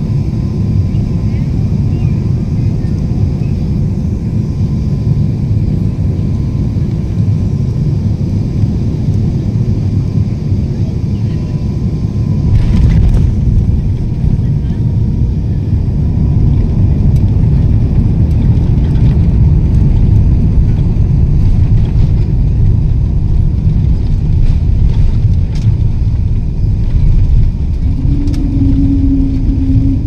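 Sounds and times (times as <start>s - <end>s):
airliner cabin rumble: 0.0s - 30.0s
steady hum: 11.2s - 30.0s.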